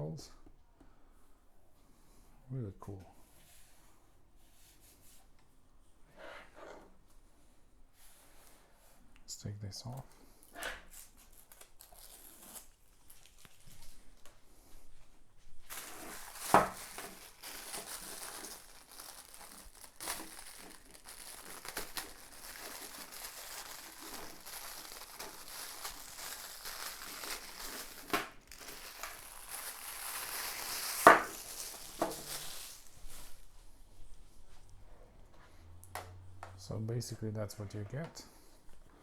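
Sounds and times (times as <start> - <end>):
packaging crinkling: 10.9 - 14.2, 15.6 - 33.6.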